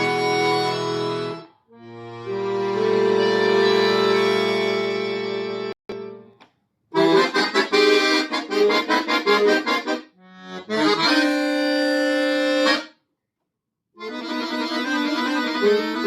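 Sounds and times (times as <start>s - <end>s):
accordion playing chords: 0.0s - 13.1s, 14.0s - 16.0s.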